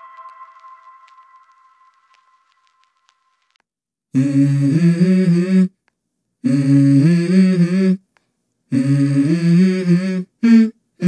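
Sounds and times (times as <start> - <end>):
hummed vocal chords: 4.2 - 5.7, 6.4 - 8.0, 8.7 - 10.7.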